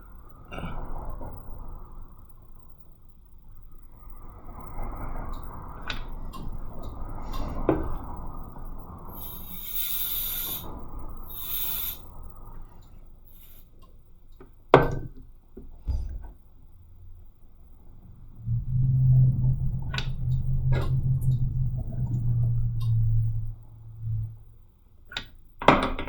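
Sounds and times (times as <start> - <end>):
short hisses: 9.1 - 12.1, 13.3 - 13.7.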